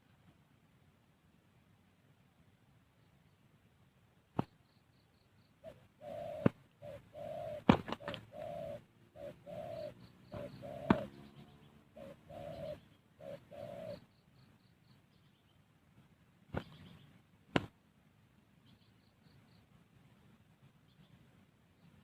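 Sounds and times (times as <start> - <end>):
dove cooing: 5.6 - 14.1.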